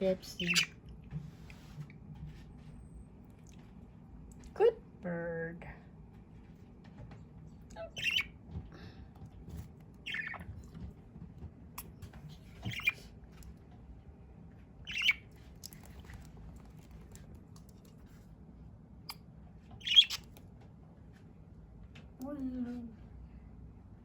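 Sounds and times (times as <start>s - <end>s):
budgerigar high calls: 0.4s - 0.7s, 8.0s - 8.3s, 10.0s - 10.4s, 12.6s - 13.0s, 14.9s - 15.2s, 19.8s - 20.2s.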